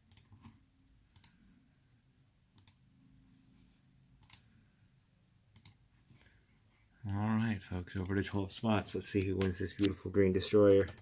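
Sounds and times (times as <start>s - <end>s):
computer mouse clicking: 0.0s - 0.5s, 1.1s - 1.4s, 2.6s - 2.8s, 4.2s - 4.5s, 5.5s - 5.8s, 10.6s - 11.0s
low room hum: 0.1s - 10.6s.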